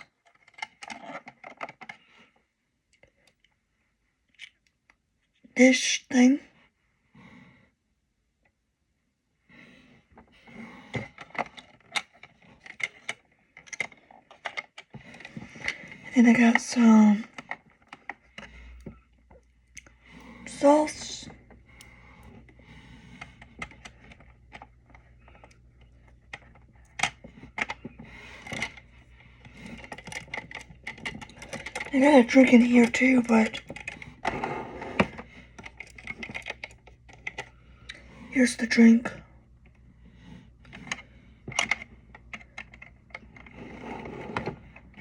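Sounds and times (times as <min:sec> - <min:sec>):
plastic scrape: 0:20.1 - 0:37.5, 0:42.4 - 0:45.0
plastic toy pieces clicking: 0:29.6 - 0:34.0, 0:35.6 - 0:37.5.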